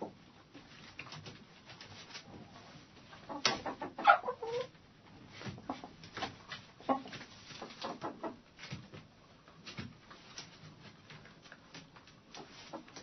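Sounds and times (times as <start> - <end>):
hens clucking: 3.0 - 4.8, 5.6 - 6.1, 6.8 - 8.5, 12.3 - 13.0.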